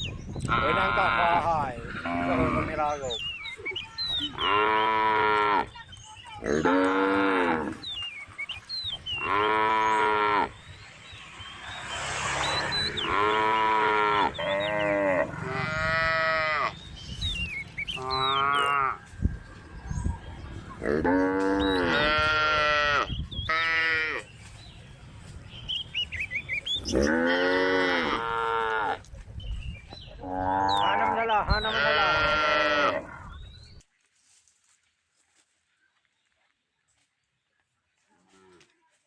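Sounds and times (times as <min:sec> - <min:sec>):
cows mooing: 0:00.5 - 0:03.0, 0:04.3 - 0:05.7, 0:06.4 - 0:07.8, 0:09.2 - 0:10.6, 0:12.7 - 0:16.8, 0:18.0 - 0:19.0, 0:20.8 - 0:24.2, 0:26.9 - 0:29.0, 0:30.2 - 0:33.3.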